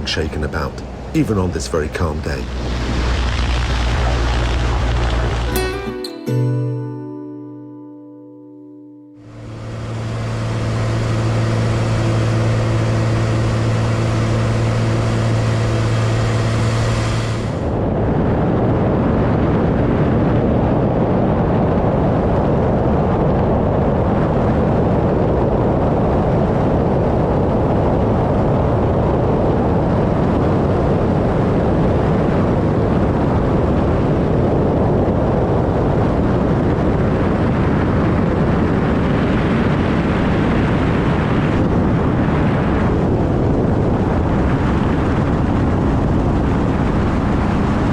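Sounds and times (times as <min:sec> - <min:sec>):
propeller plane engine drone: 0:00.0 - 0:05.5, 0:09.2 - 0:47.9
airflow rushing: 0:02.2 - 0:06.5, 0:09.3 - 0:18.3.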